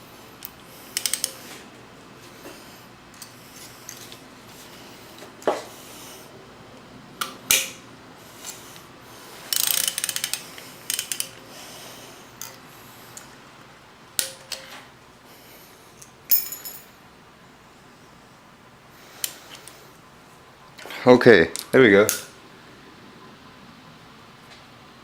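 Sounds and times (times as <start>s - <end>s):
wrench clicking against metal: 0.4s - 1.4s, 9.5s - 11.4s.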